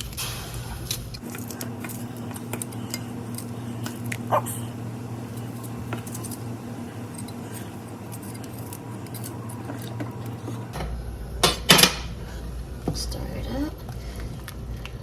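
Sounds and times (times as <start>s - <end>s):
steady low hum: 0.0s - 15.0s
utensils and dishes clinking: 5.3s - 12.1s.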